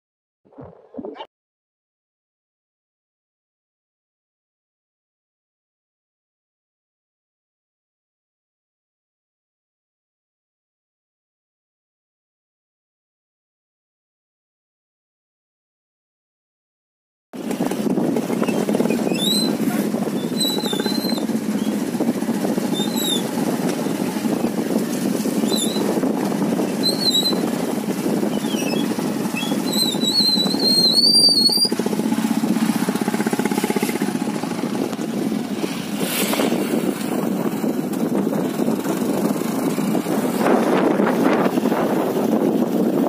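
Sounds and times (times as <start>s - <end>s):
low rushing noise: 31.7s - 42.4s.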